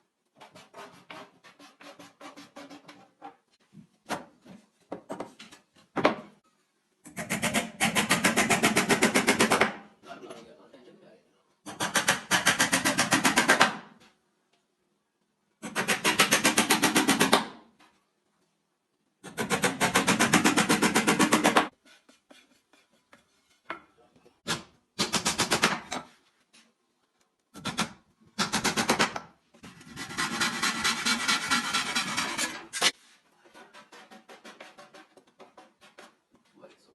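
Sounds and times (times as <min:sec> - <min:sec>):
tool scraping across wood: 0:00.4 - 0:03.6, 0:29.6 - 0:36.4.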